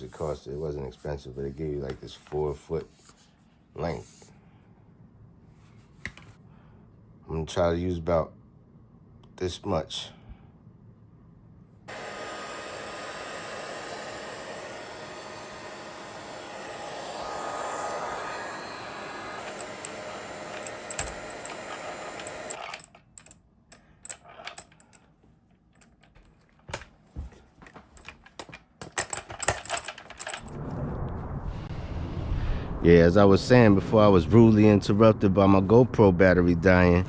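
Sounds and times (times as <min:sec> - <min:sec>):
heat gun blowing: 0:11.9 - 0:22.9
parts clicking and tapping: 0:19.4 - 0:30.6.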